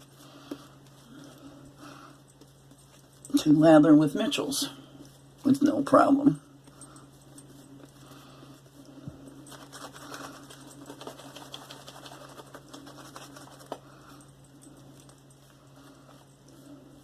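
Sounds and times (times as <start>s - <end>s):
steady low hum: 0.0s - 17.0s
shaving brush swirling soap lather: 9.4s - 13.8s.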